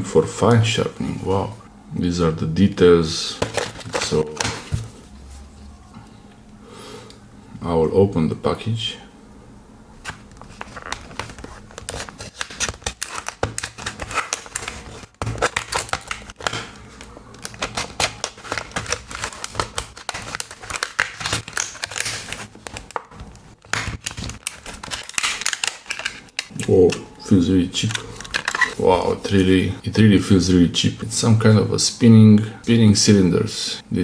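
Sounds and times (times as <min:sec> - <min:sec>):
packaging crinkling and tearing: 0:03.3 - 0:04.9, 0:10.0 - 0:27.1, 0:27.8 - 0:29.3.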